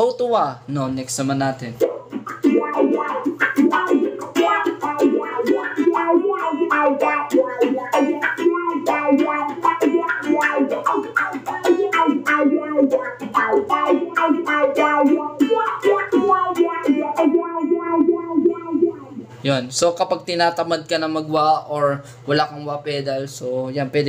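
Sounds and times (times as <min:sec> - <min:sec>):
electric guitar with wah effect: 0:01.6 - 0:19.4.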